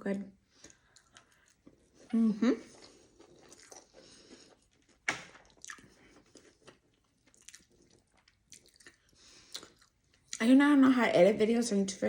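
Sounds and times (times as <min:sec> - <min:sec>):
chewing food: 0:00.5 - 0:10.4
small mouth clicks: 0:08.5 - 0:09.9.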